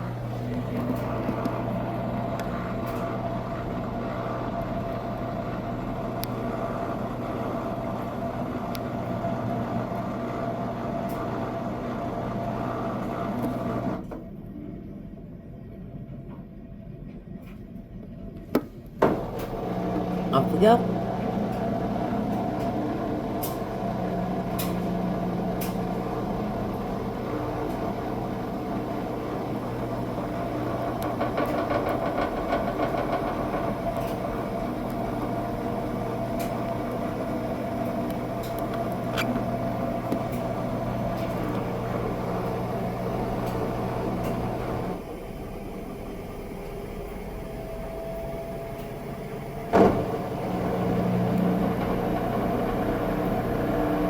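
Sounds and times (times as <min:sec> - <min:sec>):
washing machine spinning: 0:00.0 - 0:54.0
washing machine clunk: 0:49.7 - 0:53.5.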